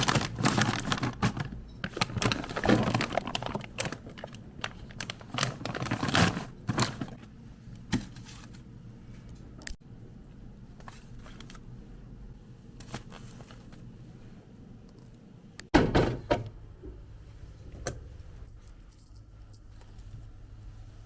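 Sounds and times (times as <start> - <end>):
packaging clattering: 0.0 - 7.2
groceries knocking and clicking: 0.0 - 8.7.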